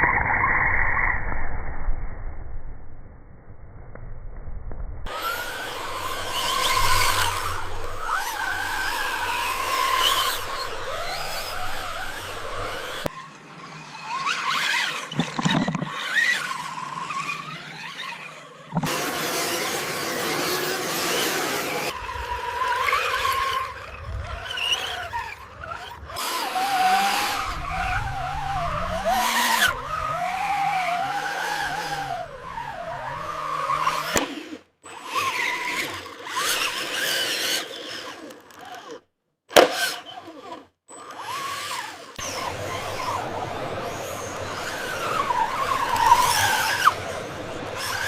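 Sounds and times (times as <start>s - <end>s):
noisy scraping: 3.2s - 13.2s, 14.8s - 17.6s, 42.2s - 48.0s
motor whines wavering in pitch: 5.1s - 39.0s, 39.6s - 48.0s.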